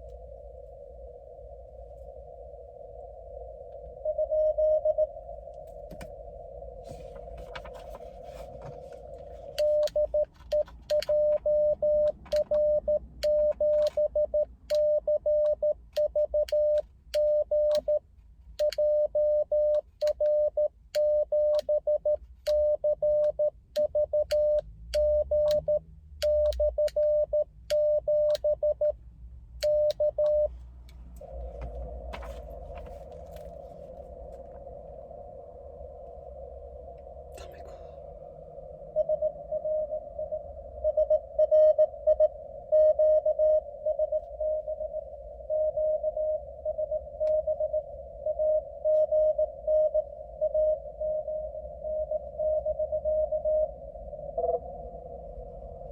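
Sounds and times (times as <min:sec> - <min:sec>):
morse code tone: 0:04.0 - 0:05.2, 0:07.6 - 0:18.0, 0:18.6 - 0:29.0, 0:29.6 - 0:30.5, 0:38.8 - 0:54.9.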